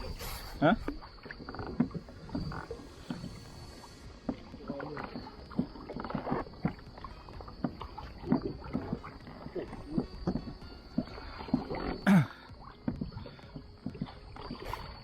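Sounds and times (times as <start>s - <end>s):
knocks and taps on kayak: 4.1s - 15.0s.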